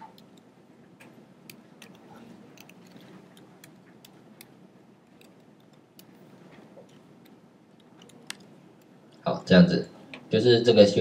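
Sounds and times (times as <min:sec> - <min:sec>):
low room hiss: 0:00.0 - 0:11.0.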